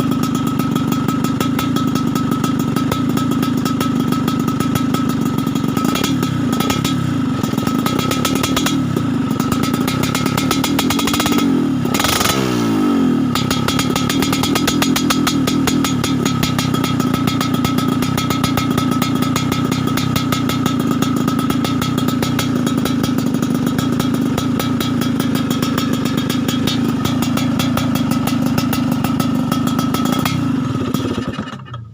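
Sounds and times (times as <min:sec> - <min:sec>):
motorcycle idling: 0:00.0 - 0:31.9
motorcycle throttle blip: 0:13.3 - 0:31.3.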